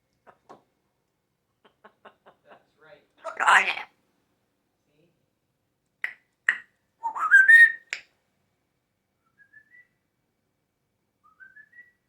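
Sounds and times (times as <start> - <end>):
parrot whistling: 7.0 - 7.9.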